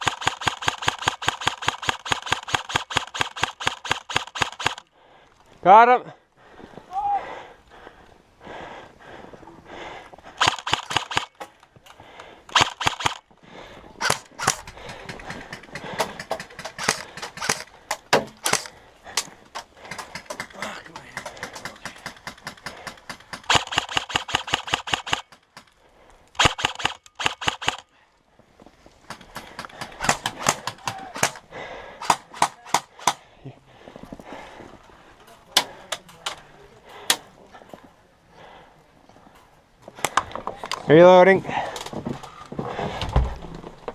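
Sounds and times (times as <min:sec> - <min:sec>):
airsoft rifles firing: 0:00.0 - 0:04.9, 0:10.4 - 0:11.4, 0:12.5 - 0:13.2, 0:14.0 - 0:18.8, 0:19.8 - 0:25.7, 0:26.4 - 0:27.9, 0:29.1 - 0:33.2.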